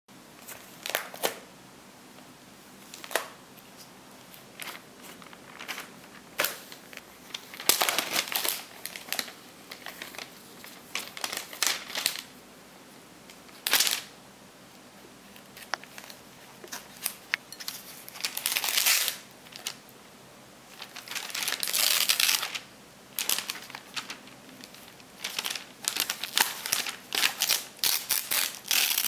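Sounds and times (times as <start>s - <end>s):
magazine paper crinkling: 4.2s - 12.4s, 13.6s - 14.1s, 15.4s - 19.8s, 20.7s - 29.0s.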